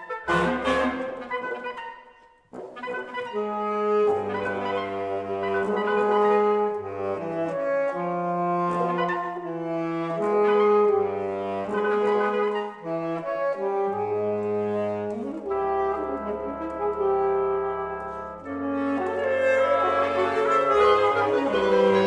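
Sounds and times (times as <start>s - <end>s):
reed quintet playing chords: 0.2s - 1.7s, 14.0s - 22.0s.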